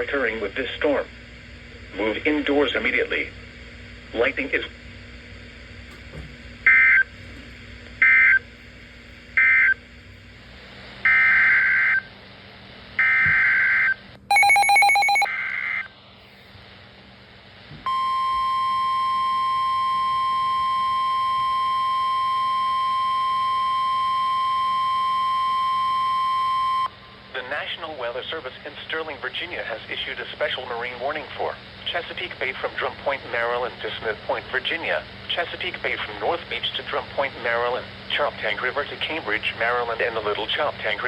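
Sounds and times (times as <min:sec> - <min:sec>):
steady warning alarm tone: 0:11.1 - 0:12.0, 0:13.0 - 0:15.3, 0:17.9 - 0:27.0
emergency alert data bursts: 0:13.0 - 0:15.3
buzzy beep: 0:14.3 - 0:15.3.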